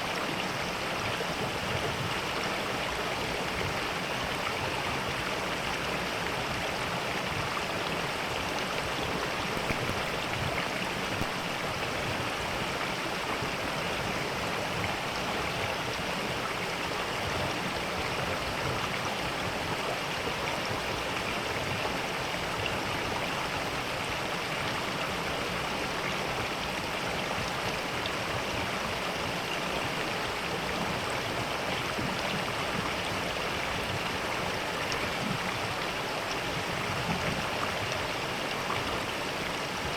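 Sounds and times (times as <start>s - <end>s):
stream flowing: 0.0s - 39.9s.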